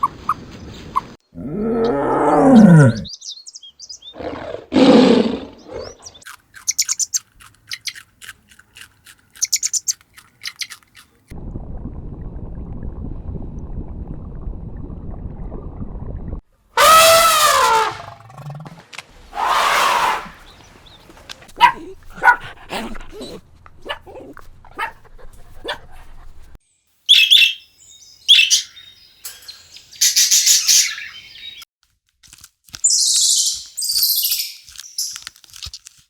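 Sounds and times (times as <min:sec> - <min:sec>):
animal call with falling pitch: 0:01.4 - 0:03.1, 0:16.8 - 0:18.7.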